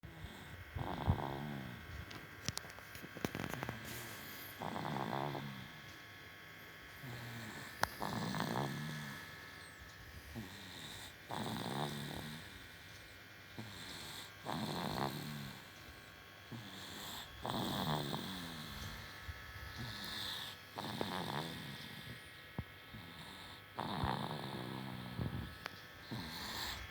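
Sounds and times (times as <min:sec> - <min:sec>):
baby snoring: 0:00.1 - 0:06.0, 0:06.9 - 0:26.9.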